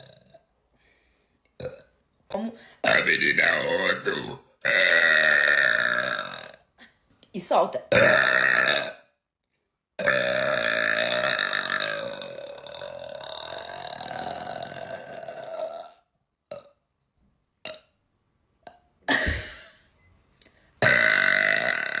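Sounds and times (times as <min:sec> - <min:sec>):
woman burping loudly: 0:00.0 - 0:00.5, 0:01.6 - 0:06.9, 0:07.9 - 0:09.2, 0:10.0 - 0:16.8, 0:17.6 - 0:17.9, 0:20.8 - 0:22.0.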